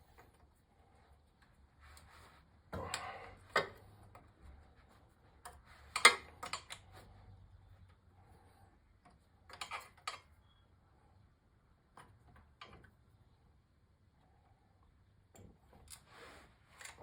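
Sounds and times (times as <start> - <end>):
rustling scrape: 16.0 - 17.0.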